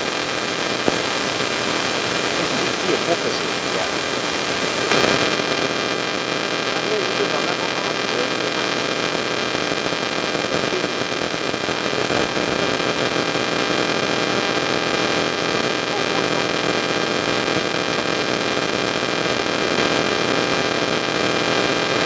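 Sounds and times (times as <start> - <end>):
hiss and electrical hum: 0.0 - 22.0
faint voices murmuring: 2.3 - 4.1.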